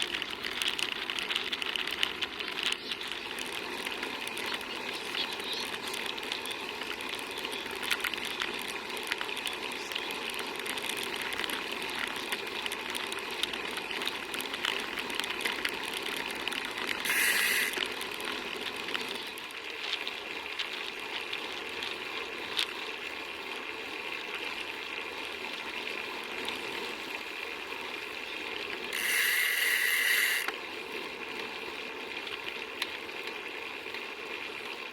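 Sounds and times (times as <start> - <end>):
bicycle riding rush: 0.0 - 34.9
freewheel ratchet ticking: 17.0 - 17.8, 28.9 - 30.5
hissing bursts: 17.0 - 17.8.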